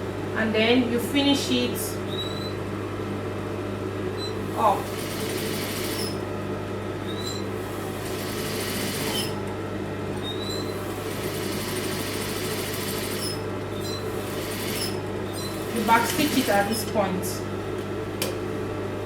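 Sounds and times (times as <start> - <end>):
sewing machine running: 4.6 - 6.2, 7.9 - 9.4, 10.8 - 13.4, 14.0 - 16.9
brief high squeaks: 10.2 - 10.7.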